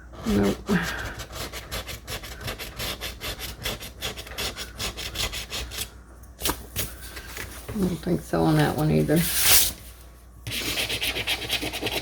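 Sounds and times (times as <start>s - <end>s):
scratching lottery ticket: 0.3s - 5.9s, 10.5s - 12.0s.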